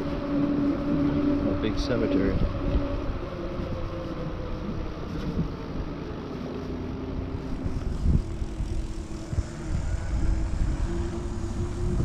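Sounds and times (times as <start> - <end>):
low motor hum: 0.0 - 12.0
wind buffeting microphone: 0.0 - 12.0.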